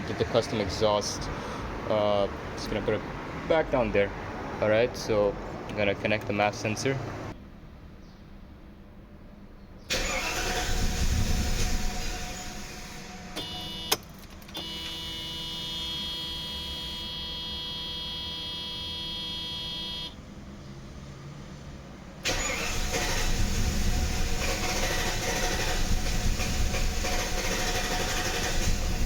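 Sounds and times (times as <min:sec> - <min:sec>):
car engine starting: 0:09.8 - 0:20.2, 0:22.2 - 0:29.0.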